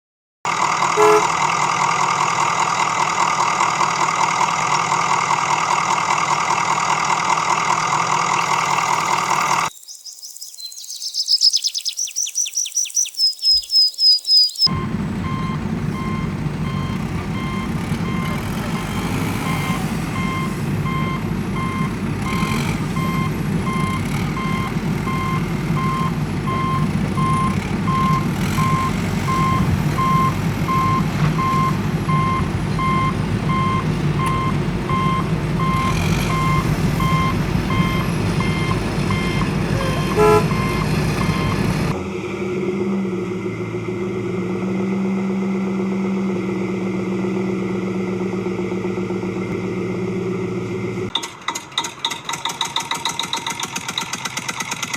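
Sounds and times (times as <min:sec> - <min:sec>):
heavy vehicle engine running: 0:00.5 - 0:09.7, 0:14.7 - 0:54.9
reversing alarm beeping: 0:08.4 - 0:41.7.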